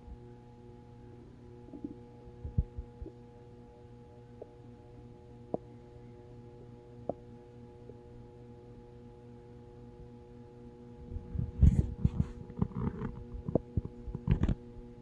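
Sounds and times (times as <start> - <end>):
steady background hum: 0.0 - 15.0
stomach growling: 11.4 - 14.6.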